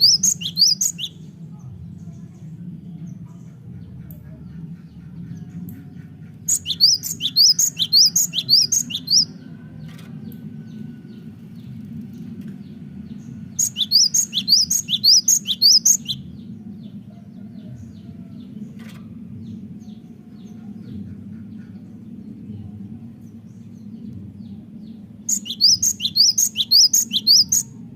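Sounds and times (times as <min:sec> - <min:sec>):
bird singing sharp high notes: 0:00.0 - 0:01.2, 0:06.5 - 0:09.3, 0:13.6 - 0:16.2, 0:25.3 - 0:27.7
steady low hum: 0:00.0 - 0:27.9.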